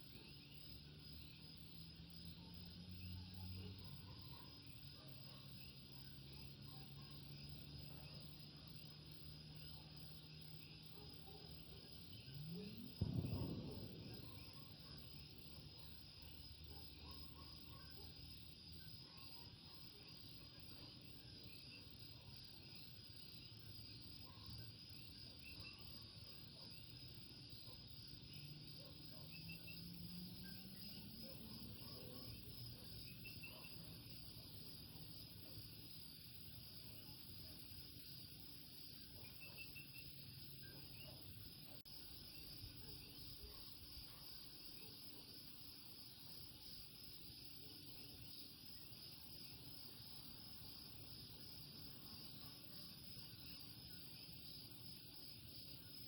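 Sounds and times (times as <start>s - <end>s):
high insect trill: 12.0s - 19.1s.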